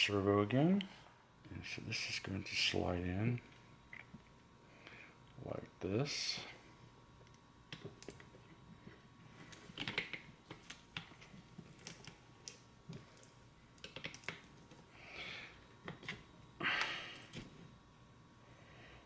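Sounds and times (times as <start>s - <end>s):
small parts clicking and tapping: 7.2s - 14.8s.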